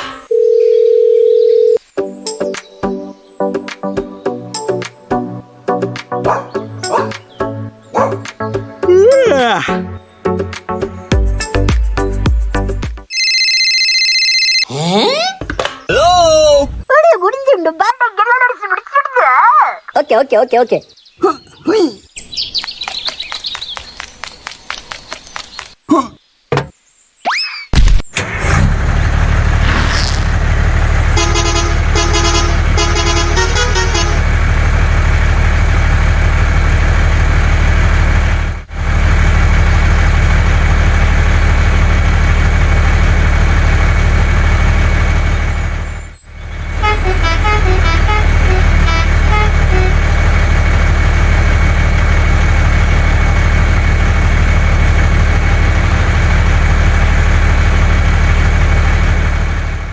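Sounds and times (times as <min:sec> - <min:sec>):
truck engine running: 0:28.6 - 0:59.9
truck horn honks: 0:31.0 - 0:34.4, 0:46.8 - 0:50.2.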